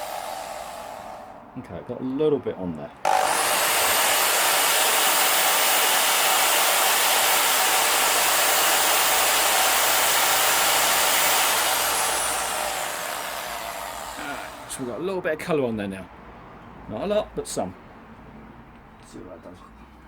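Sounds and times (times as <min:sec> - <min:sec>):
power drill motor whine: 0:00.0 - 0:01.4, 0:03.1 - 0:14.8.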